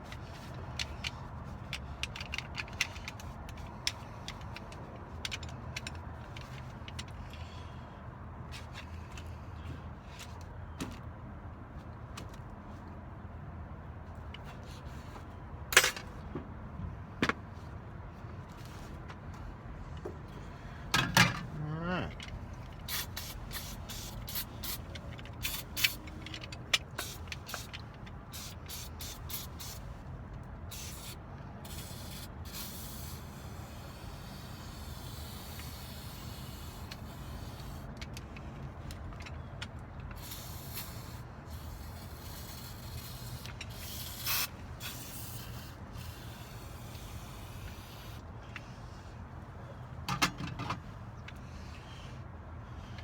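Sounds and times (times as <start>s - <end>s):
aerosol can spraying: 30.7s - 37.8s.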